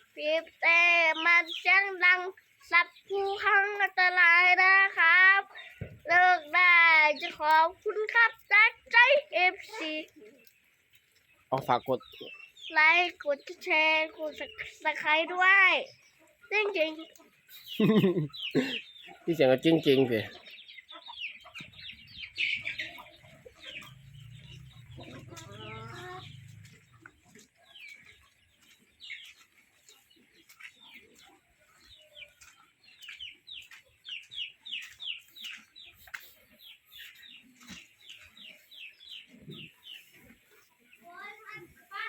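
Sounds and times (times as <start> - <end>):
chickens clucking and peeping: 0.0 - 42.0.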